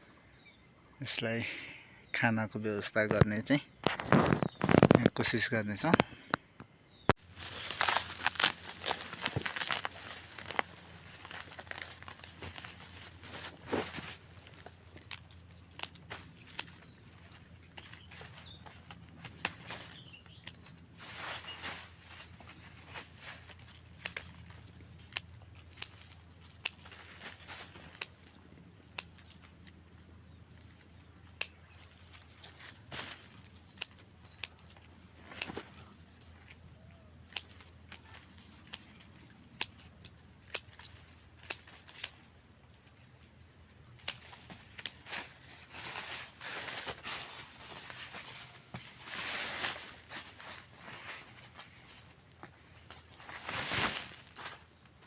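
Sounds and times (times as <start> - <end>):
foliage rustling: 2.8 - 6.3, 7.1 - 55.0
pruning shears snipping: 14.6 - 17.0, 23.6 - 29.5, 33.7 - 35.8, 37.2 - 42.3, 43.9 - 45.4.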